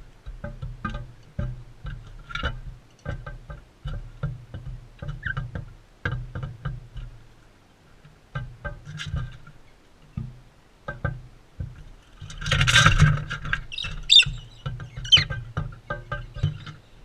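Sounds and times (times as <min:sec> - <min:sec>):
birds pecking at seed: 0:08.0 - 0:17.0
short squeak: 0:13.7 - 0:15.3.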